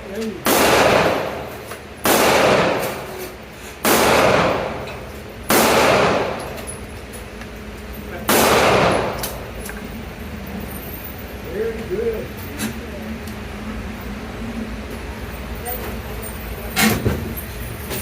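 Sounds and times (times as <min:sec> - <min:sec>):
gunshots with echoing tail: 0:00.4 - 0:03.2, 0:03.8 - 0:04.9, 0:05.5 - 0:06.6, 0:08.3 - 0:09.4.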